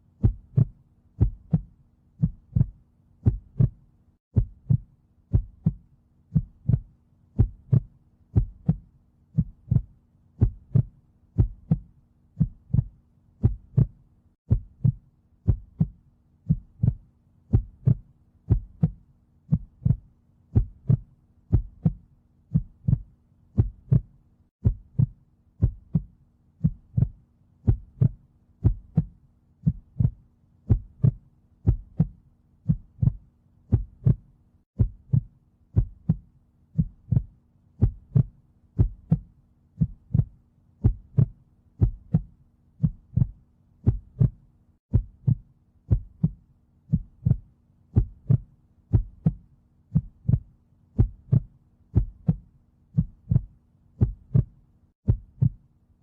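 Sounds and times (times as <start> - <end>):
heartbeat thumps: 0.2 - 55.6.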